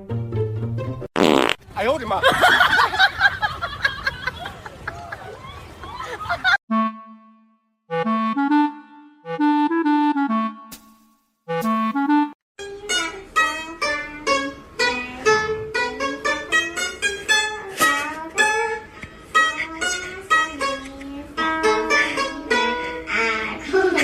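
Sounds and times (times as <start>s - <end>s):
plucked string instrument tune: 11.5s - 23.4s.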